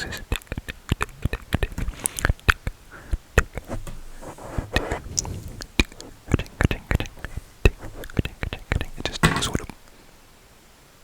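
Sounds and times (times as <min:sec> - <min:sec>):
soft rustle: 0:03.0 - 0:09.2.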